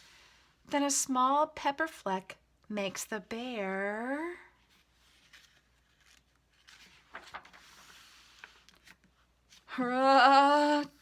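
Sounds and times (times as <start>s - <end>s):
book page rustling: 4.6s - 9.7s
woman holding long aaah: 9.7s - 11.0s.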